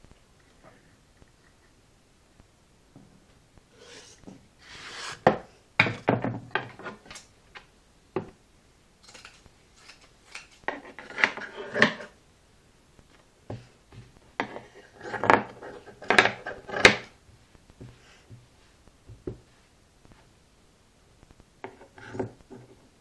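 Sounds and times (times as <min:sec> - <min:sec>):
rubbing scrape: 0:03.7 - 0:05.3.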